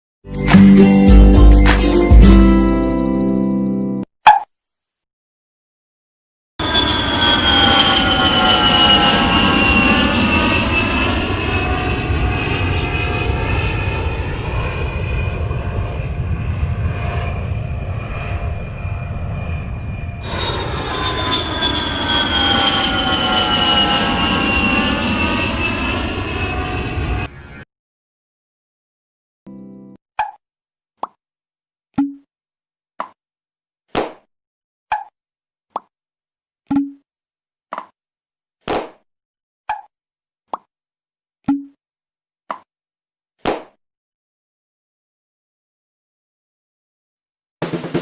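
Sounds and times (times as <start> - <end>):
jet engine roar with whine: 6.6 - 27.7.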